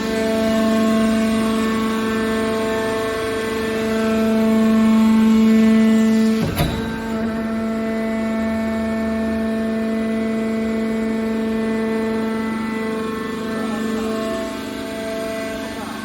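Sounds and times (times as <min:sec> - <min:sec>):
hydraulic power unit humming: 0:00.0 - 0:16.0
sharp bang: 0:06.4 - 0:07.9.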